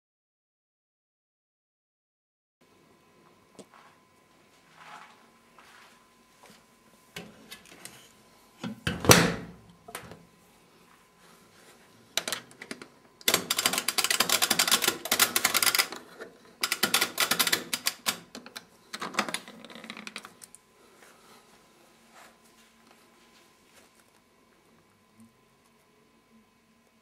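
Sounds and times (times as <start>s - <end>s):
washing machine clicking and rattling: 12.2s - 20.2s.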